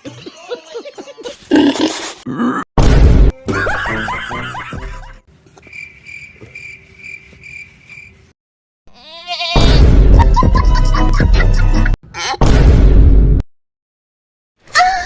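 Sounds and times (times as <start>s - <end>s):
bleat-like animal cry: 8.9s - 9.8s.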